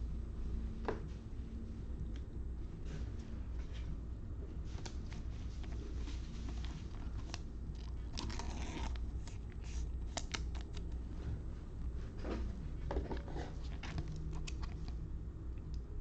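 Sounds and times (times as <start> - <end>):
packaging rustling: 4.8 - 10.9.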